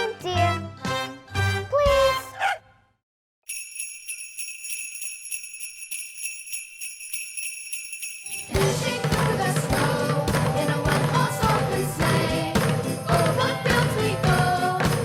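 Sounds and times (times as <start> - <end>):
sleigh bells shaking: 3.5 - 15.0.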